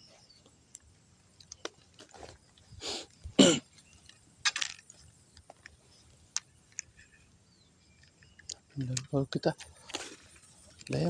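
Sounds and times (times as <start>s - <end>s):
man clearing his throat: 3.4s - 3.6s.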